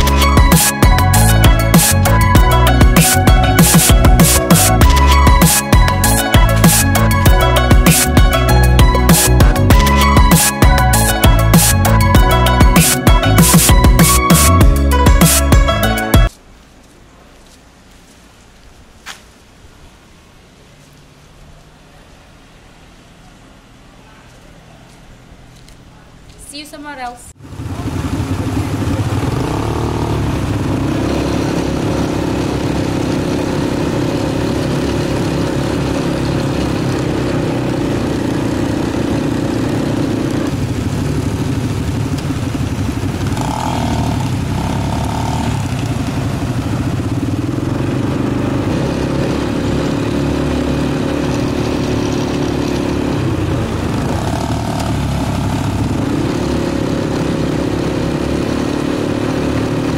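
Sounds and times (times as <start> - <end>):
quad bike engine revving: 27.4 - 59.9.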